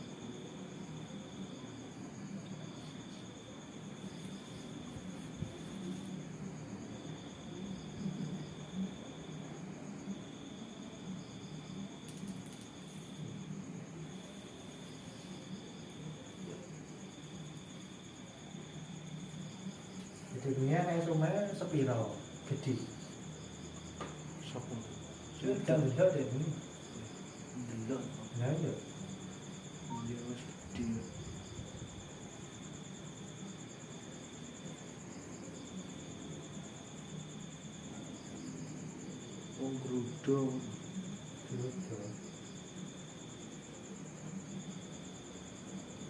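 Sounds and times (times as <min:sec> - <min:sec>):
insect trilling: 0:10.0 - 0:46.0.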